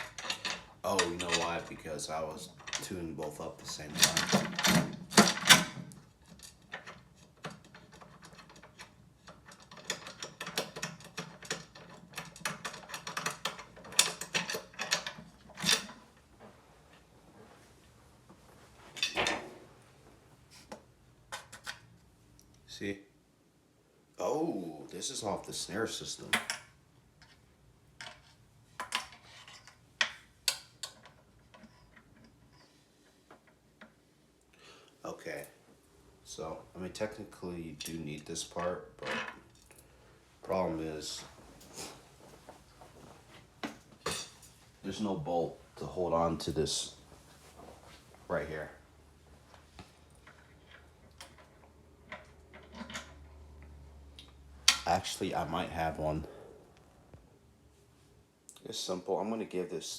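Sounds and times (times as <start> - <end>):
drum hardware clicking and rattling: 3.6 - 5.9.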